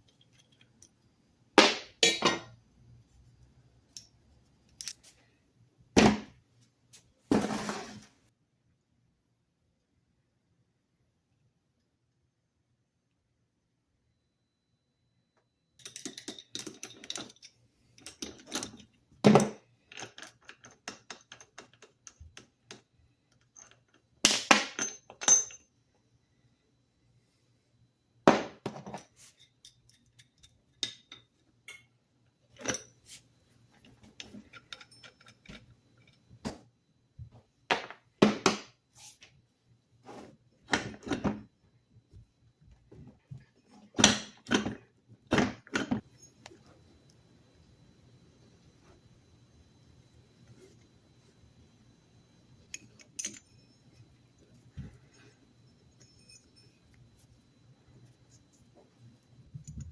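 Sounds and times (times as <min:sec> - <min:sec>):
metal tools clinking on workbench: 0:02.0 - 0:02.6, 0:04.7 - 0:05.1, 0:15.8 - 0:25.7, 0:34.1 - 0:36.2, 0:52.7 - 0:54.0, 0:55.9 - 0:56.9.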